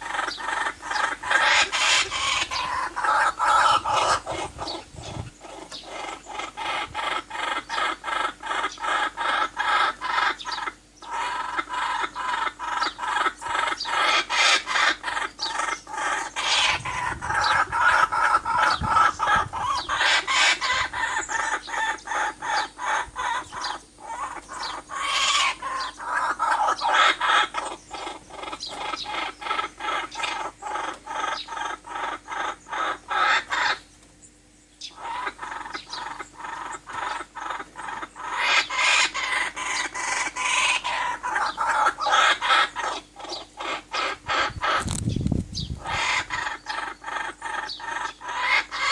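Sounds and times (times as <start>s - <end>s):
birds clucking: 0.0s - 48.9s.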